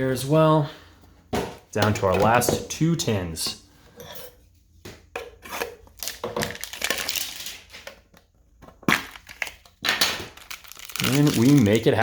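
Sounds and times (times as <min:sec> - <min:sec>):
plastic packaging crackling: 0:06.0 - 0:07.9, 0:08.8 - 0:12.0.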